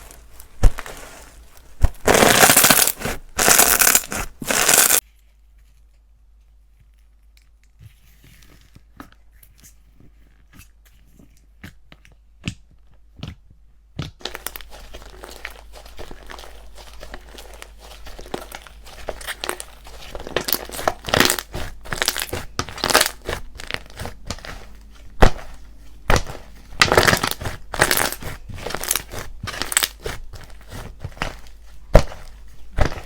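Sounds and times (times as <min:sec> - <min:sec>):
slime crackling and tearing: 0:00.0 - 0:05.0, 0:14.2 - 0:33.0.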